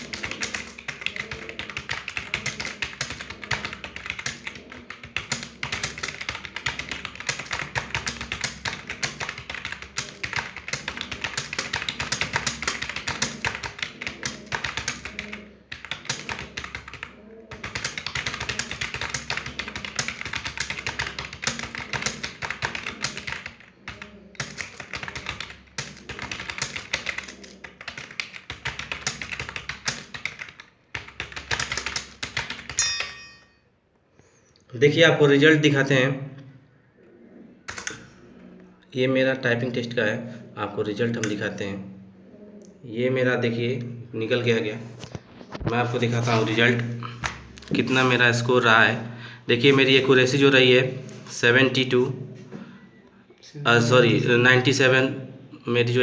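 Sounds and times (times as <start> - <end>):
fast typing on keyboard: 0.0 - 32.9, 37.7 - 38.1, 45.0 - 49.0.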